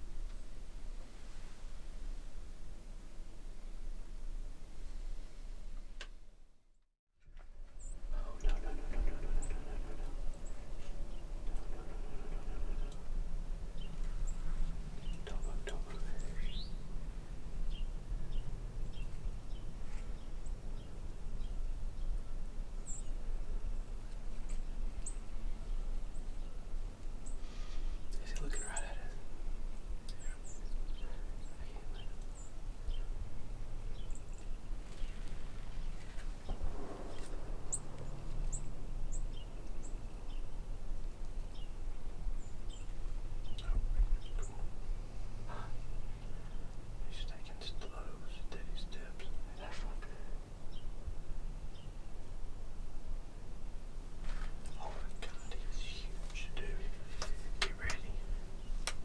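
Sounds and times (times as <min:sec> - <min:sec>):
small birds chirping: 0:07.7 - 0:40.6, 0:41.4 - 0:52.3, 0:54.3 - 0:59.0
low rumble: 0:08.0 - 0:24.1, 0:30.8 - 0:41.1
small bird chirping: 0:13.7 - 0:16.9.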